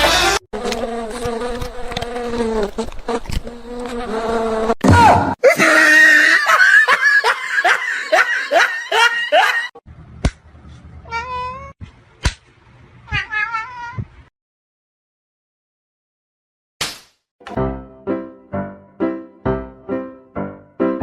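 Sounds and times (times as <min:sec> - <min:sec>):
cat meowing: 0:11.0 - 0:11.8, 0:13.1 - 0:14.1.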